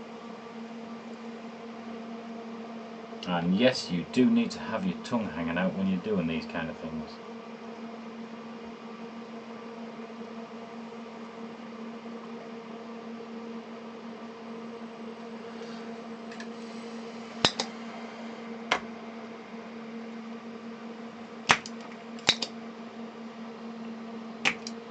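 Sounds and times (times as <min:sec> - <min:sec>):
sharp clicks: 0:21.5 - 0:22.5, 0:24.4 - 0:24.8.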